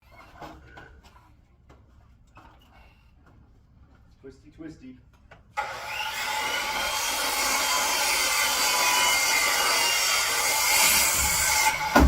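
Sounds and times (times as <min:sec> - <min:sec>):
power tool cutting wood: 0:05.6 - 0:12.0.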